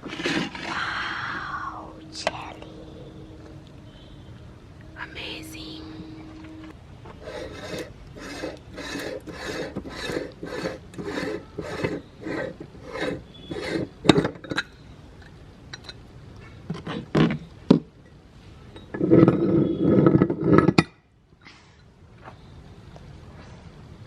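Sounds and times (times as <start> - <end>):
meat grinder rasping: 7.3 - 13.8.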